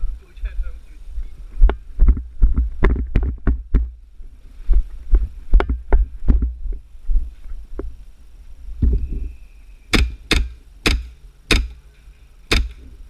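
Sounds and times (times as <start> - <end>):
irregular thumps and knocks: 1.6 - 4.0, 4.8 - 6.8.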